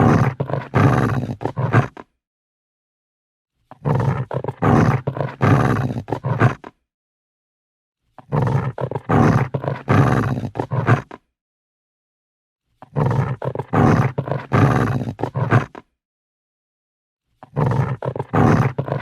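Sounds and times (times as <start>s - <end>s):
dog growling: 0.0s - 2.1s, 3.7s - 6.8s, 8.2s - 11.2s, 12.8s - 15.9s, 17.4s - 19.0s.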